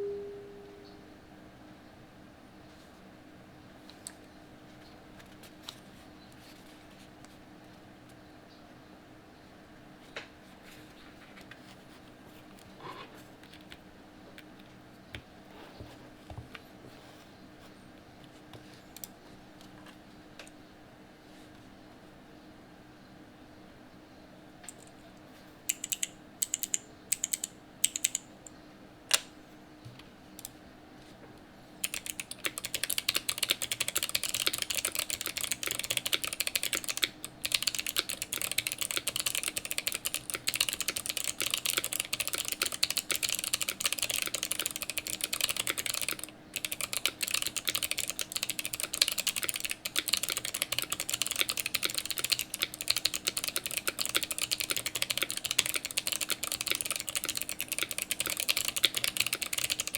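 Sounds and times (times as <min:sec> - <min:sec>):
clicky keyboard typing: 0:25.7 - 0:28.3, 0:31.8 - 0:59.9.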